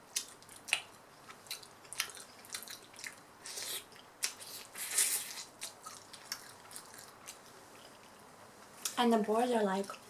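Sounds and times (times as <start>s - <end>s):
wet chewing with smacks: 0.1s - 8.2s.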